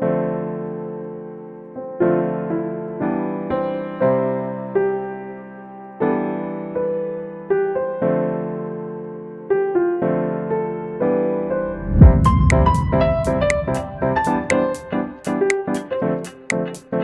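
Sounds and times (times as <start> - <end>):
piano chords: 0.0 - 17.0
drum beat: 12.0 - 16.8.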